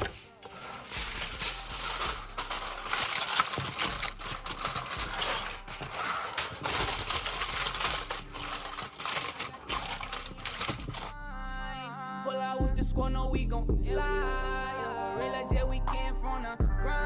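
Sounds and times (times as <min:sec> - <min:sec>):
crinkling handling noise: 0:00.0 - 0:11.2.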